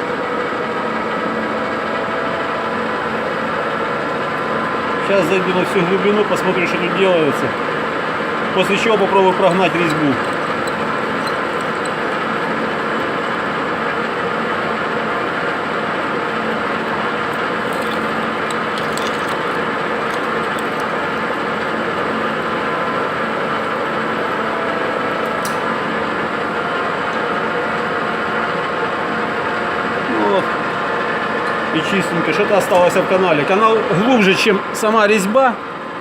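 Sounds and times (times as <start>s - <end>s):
metal lathe running: 5.0s - 14.6s, 16.8s - 25.6s
drill boring into metal: 8.6s - 12.7s, 17.4s - 22.2s.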